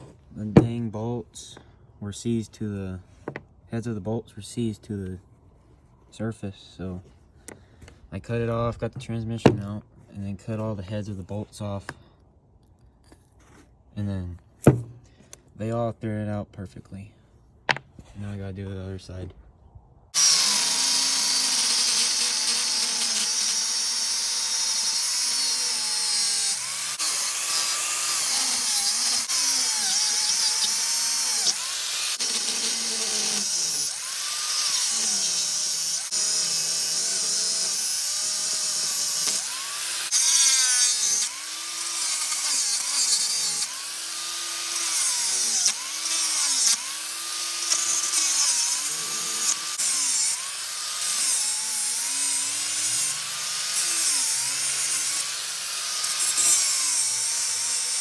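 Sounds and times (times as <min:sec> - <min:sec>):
power tool cutting metal: 0:20.2 - 0:58.0.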